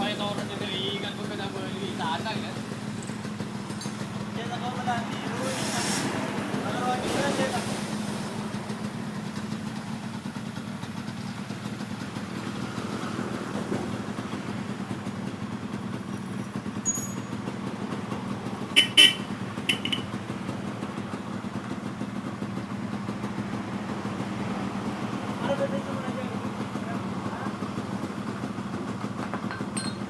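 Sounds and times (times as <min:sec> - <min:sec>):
two-stroke engine idling: 0:00.0 - 0:30.0
horn toots: 0:18.8 - 0:20.2.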